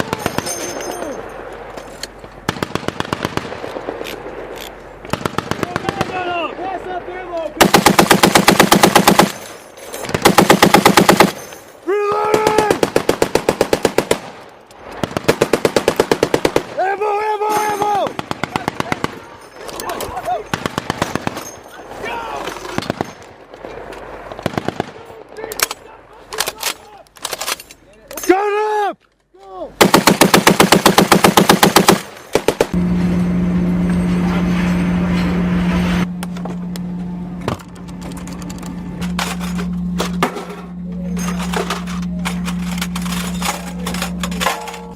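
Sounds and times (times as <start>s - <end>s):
machine gun firing bursts: 2.4s - 4.0s, 5.1s - 6.3s, 7.6s - 11.4s, 12.5s - 14.4s, 15.0s - 16.8s, 18.1s - 19.4s, 20.5s - 21.4s, 29.8s - 32.8s
heavy machine gun bursts: 7.6s - 11.6s, 29.8s - 32.8s
steady low engine hum: 32.7s - 44.9s.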